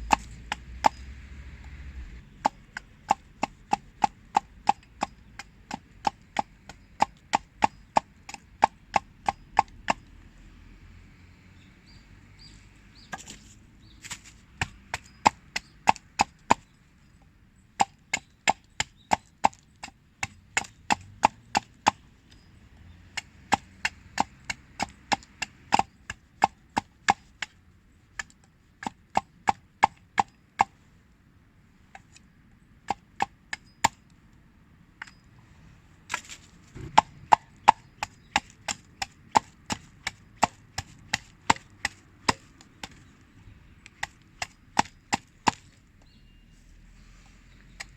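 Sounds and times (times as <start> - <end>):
wood being struck: 0.0 - 1.1, 36.1 - 43.0, 44.0 - 45.8.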